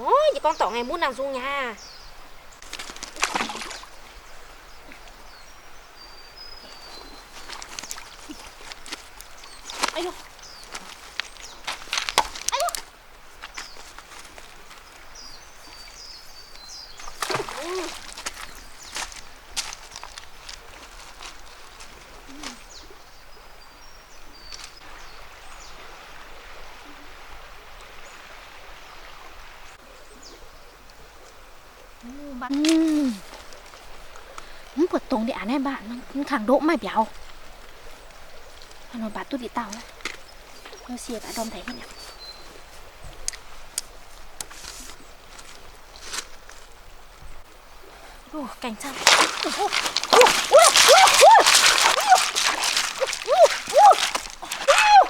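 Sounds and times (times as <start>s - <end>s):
rough scuffing noise: 7.3s - 14.9s, 17.0s - 22.6s, 48.8s - 55.0s
faint clicks: 43.1s - 46.7s.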